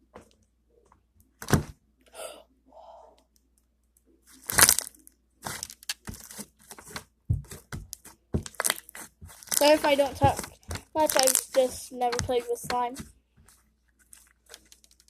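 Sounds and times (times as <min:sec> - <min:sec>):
bead slime popping: 0:04.4 - 0:06.2, 0:07.9 - 0:12.4.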